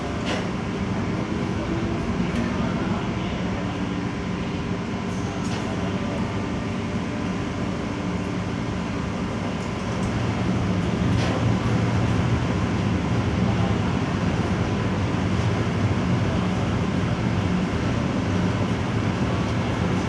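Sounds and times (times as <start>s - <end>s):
ship diesel engines droning: 8.8s - 20.0s.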